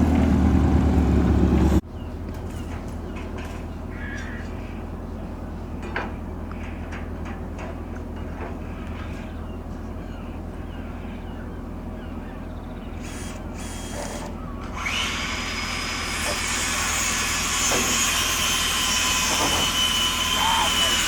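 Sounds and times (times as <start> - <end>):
steady low hum: 0.0 - 14.8.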